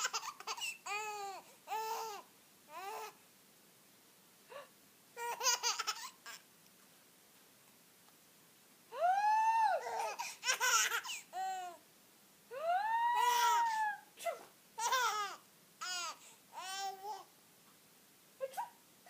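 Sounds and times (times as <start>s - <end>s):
baby squealing and laughing: 0.0s - 2.2s, 5.2s - 6.4s, 9.0s - 11.7s, 12.5s - 17.3s.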